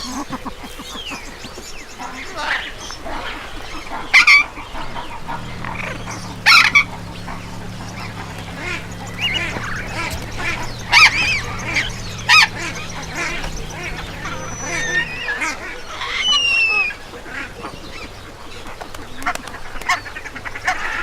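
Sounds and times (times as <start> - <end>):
loud harsh bird calls: 0.0 - 21.0
waterfowl calling: 0.0 - 21.0
steady low hum: 3.5 - 16.0.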